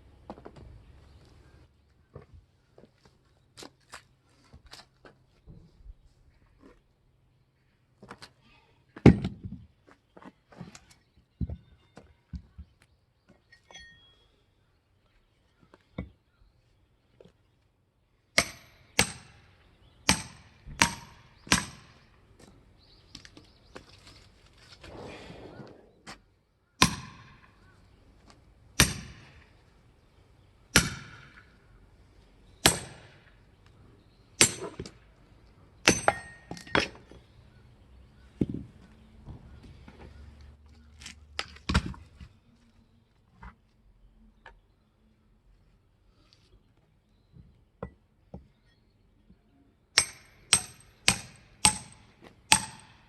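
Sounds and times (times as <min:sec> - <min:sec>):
firewood splitting strikes: 0:18.4 - 0:22.1, 0:26.8 - 0:27.5, 0:28.8 - 0:29.6, 0:30.7 - 0:31.6, 0:32.6 - 0:33.4, 0:34.4 - 0:35.0, 0:35.8 - 0:37.1, 0:50.0 - 0:53.0.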